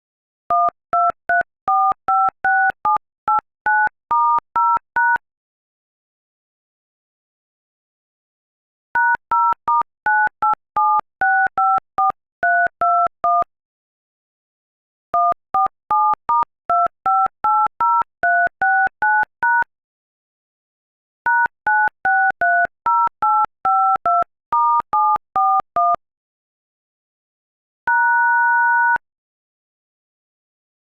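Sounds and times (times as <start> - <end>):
telephone keypad beeps: 0.5 - 5.2, 9.0 - 13.5, 15.2 - 19.7, 21.3 - 26.0, 27.9 - 29.0.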